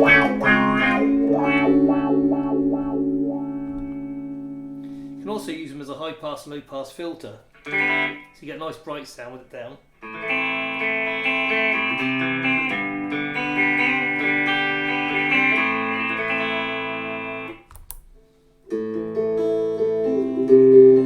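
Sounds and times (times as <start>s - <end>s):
electric guitar with wah strummed chords: 0.0s - 5.4s, 7.6s - 8.4s, 10.0s - 17.6s.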